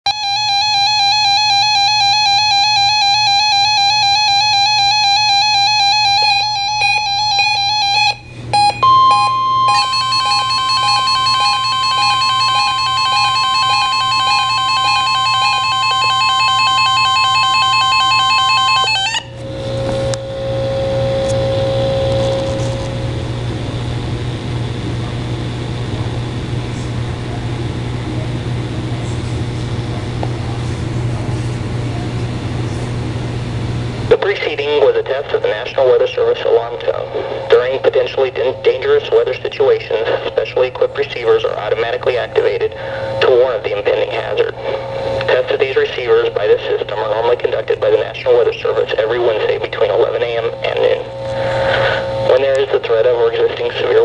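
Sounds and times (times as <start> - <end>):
pulsing warbling alert tones: 0.1 - 19.4
steady high alarm tone: 0.1 - 22.9.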